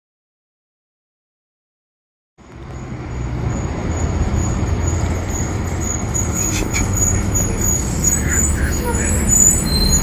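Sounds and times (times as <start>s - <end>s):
bus diesel engine droning: 2.4s - 10.0s
high engine whine: 2.4s - 10.0s.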